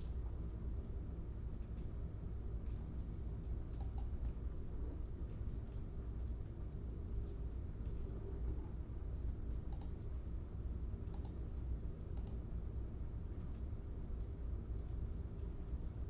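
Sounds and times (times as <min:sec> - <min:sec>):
steady low hum: 0:00.0 - 0:16.0
computer keyboard or mouse clicks: 0:03.7 - 0:04.2, 0:09.7 - 0:10.0, 0:11.1 - 0:11.4, 0:12.1 - 0:12.4.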